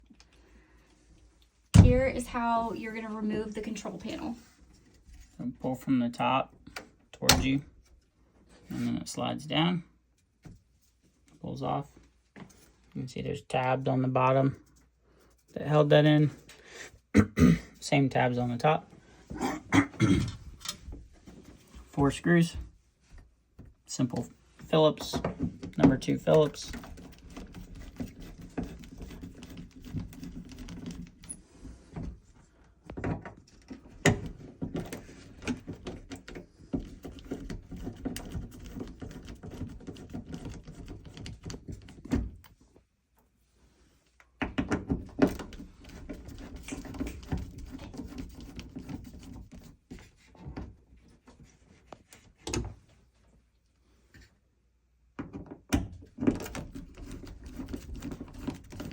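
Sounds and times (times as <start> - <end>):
screwdriver turning screws: 26.2 - 31.4, 34.0 - 41.9.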